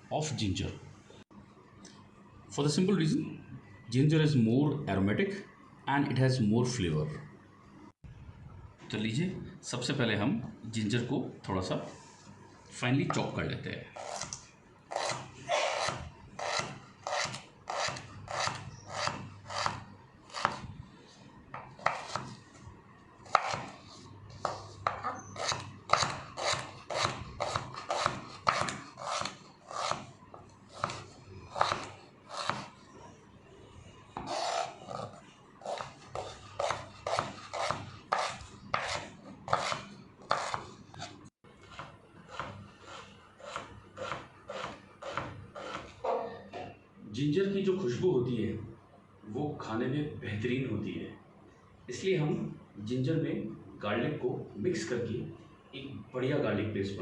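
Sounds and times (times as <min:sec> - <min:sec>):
knife chopping on a board: 0:14.9 - 0:19.8, 0:20.4 - 0:20.6, 0:21.6 - 0:22.4, 0:23.3 - 0:23.8, 0:24.4 - 0:30.1, 0:30.8 - 0:32.7, 0:35.7 - 0:40.7, 0:43.4 - 0:46.0.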